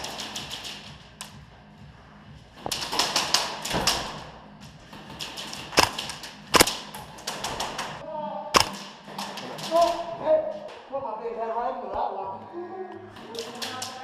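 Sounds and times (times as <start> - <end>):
airsoft guns firing: 2.6 - 4.3, 5.0 - 8.0, 8.6 - 10.2.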